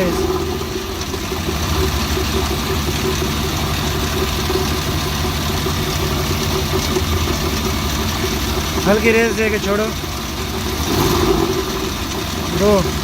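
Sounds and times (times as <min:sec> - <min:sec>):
misfiring engine idling: 0:00.0 - 0:13.0.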